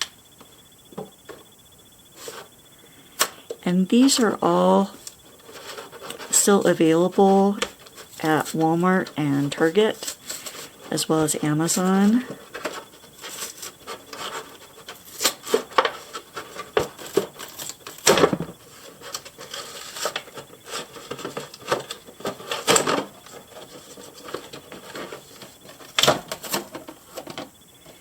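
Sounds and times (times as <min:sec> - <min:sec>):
cardboard rubbing and scraping: 0:05.2 - 0:10.9, 0:11.7 - 0:18.0, 0:18.6 - 0:27.4.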